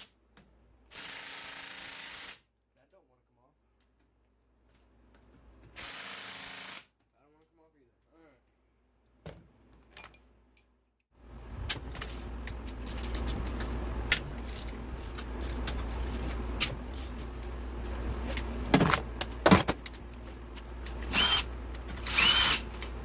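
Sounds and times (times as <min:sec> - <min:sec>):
metal tools clinking: 0:09.8 - 0:10.7, 0:11.8 - 0:21.3
steady low hum: 0:11.2 - 0:23.0.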